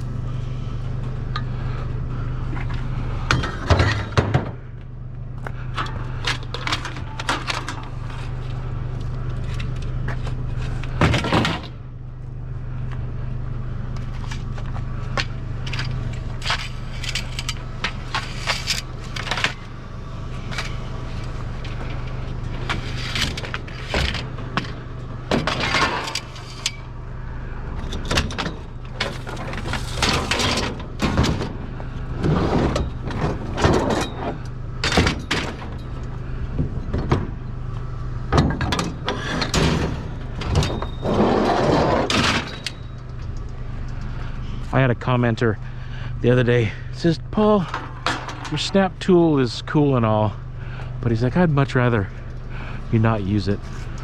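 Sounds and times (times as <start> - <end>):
steady low hum: 0.0 - 54.0
scrap metal clanking: 15.6 - 19.7.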